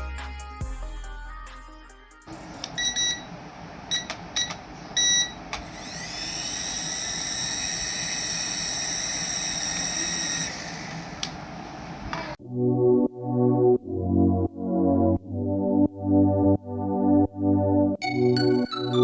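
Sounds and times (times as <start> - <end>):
short electronic beeps: 2.8 - 3.3, 3.9 - 5.4
small electric motor whining: 5.6 - 11.2.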